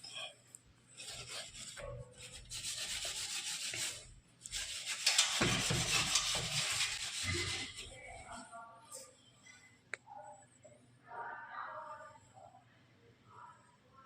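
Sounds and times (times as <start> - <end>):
scrubbing a kitchen surface: 0.9 - 8.4.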